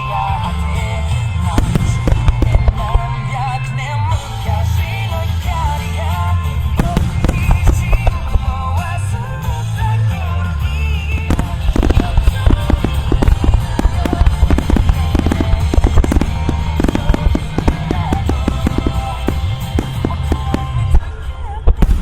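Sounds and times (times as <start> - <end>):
loud music: 0.0 - 22.0
firework shells bursting: 6.8 - 8.7, 11.3 - 20.8.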